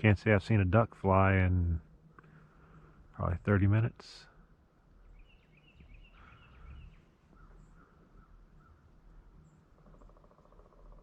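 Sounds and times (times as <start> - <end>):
faint bird calls: 4.2 - 11.0.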